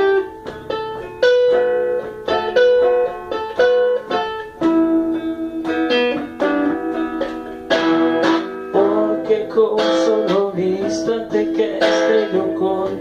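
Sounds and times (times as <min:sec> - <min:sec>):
guitar plucking and strumming: 0:00.0 - 0:13.0.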